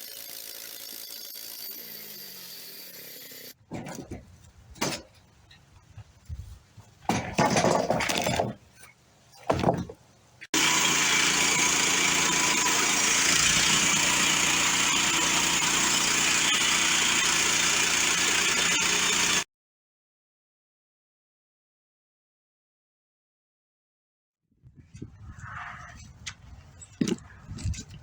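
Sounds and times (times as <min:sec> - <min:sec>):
rustling or scraping: 0:03.6 - 0:10.1.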